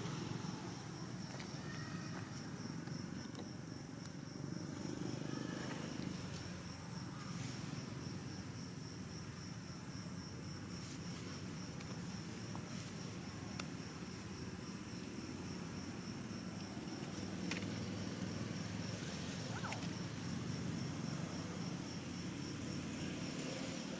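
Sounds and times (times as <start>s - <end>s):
insect trilling: 14.2s - 22.0s.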